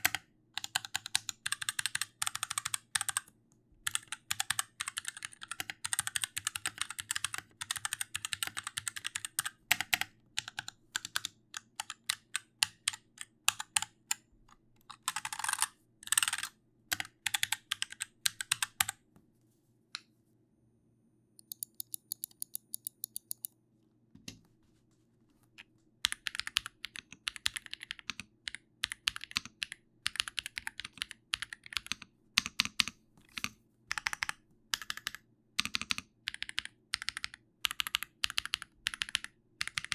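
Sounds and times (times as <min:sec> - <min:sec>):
typing on computer keyboard: 0:00.0 - 0:14.2, 0:14.8 - 0:19.0, 0:21.4 - 0:23.5, 0:26.0 - 0:39.9
faint even ticks: 0:21.4 - 0:23.5.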